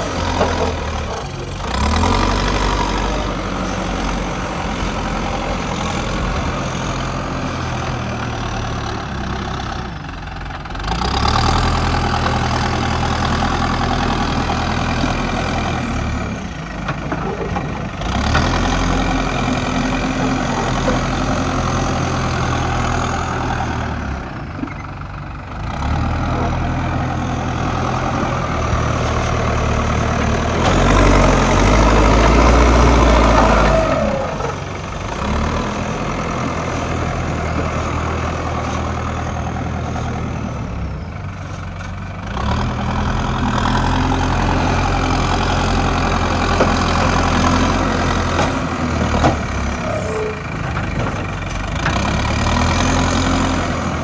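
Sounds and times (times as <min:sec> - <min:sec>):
digger diesel engine running: 0:00.0 - 0:54.0.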